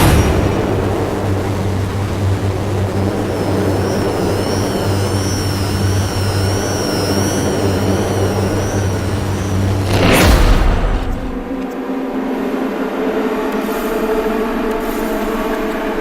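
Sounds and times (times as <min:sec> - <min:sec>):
synthesized low drone: 0:00.0 - 0:16.0
deep whoosh: 0:09.7 - 0:11.7.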